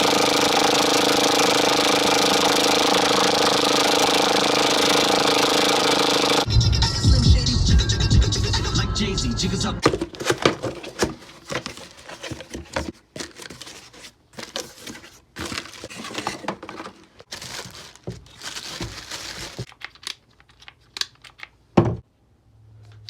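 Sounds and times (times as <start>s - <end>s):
crinkling and rustling: 9.8s - 21.6s.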